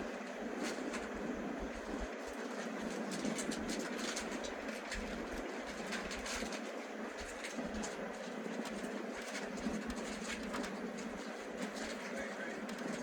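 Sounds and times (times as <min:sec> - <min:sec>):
train rumble inside carriage: 0:09.4 - 0:13.0.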